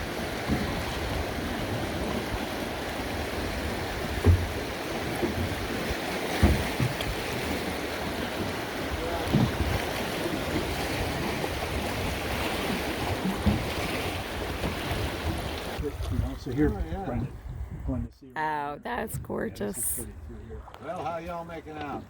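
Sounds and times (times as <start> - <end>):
wind on microphone: 10.5 - 18.1.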